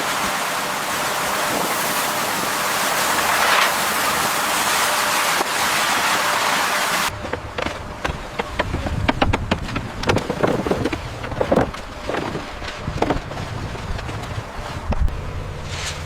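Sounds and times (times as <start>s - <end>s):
low machine rumble: 7.0s - 16.0s.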